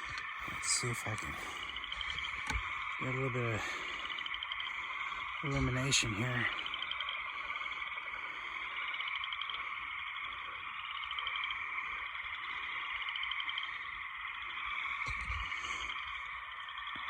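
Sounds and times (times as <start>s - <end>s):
frogs calling: 0.0s - 17.0s
insects chirping: 0.0s - 17.0s.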